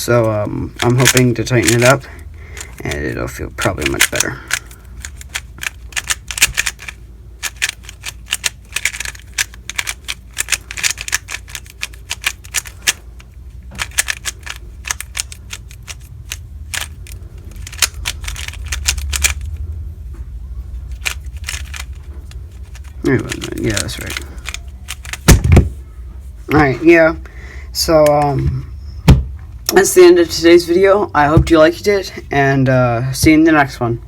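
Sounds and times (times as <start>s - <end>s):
puzzle cube layers clicking: 3.6s - 13.0s, 13.8s - 19.6s, 20.9s - 22.0s, 22.6s - 25.4s.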